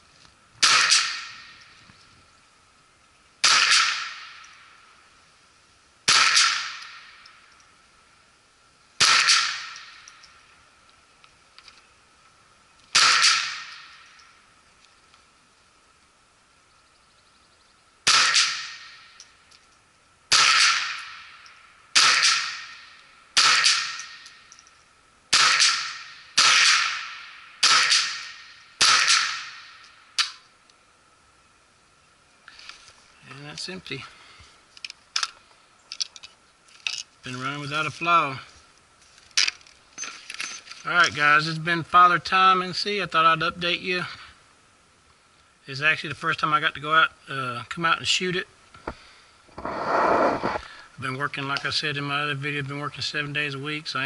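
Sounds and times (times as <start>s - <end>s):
rifle shots: 0.6s - 1.6s, 3.4s - 4.4s, 6.0s - 7.2s, 9.0s - 10.0s, 12.9s - 14.0s, 18.0s - 19.1s, 20.3s - 24.3s, 25.3s - 30.4s.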